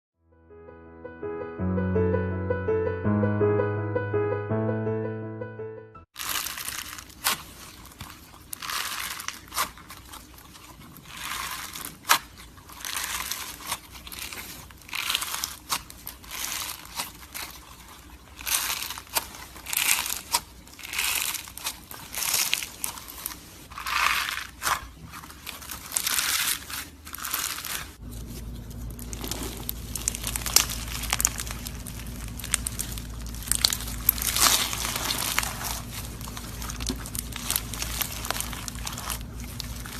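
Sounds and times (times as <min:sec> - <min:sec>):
crunchy slime crackling: 0:06.1 - 0:39.9
steady low hum: 0:28.0 - 0:39.9.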